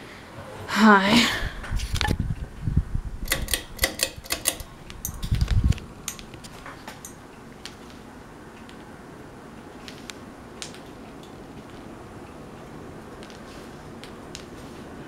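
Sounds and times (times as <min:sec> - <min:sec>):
faint steady hum: 0:00.0 - 0:15.0
ceiling fan clicking: 0:01.6 - 0:15.0.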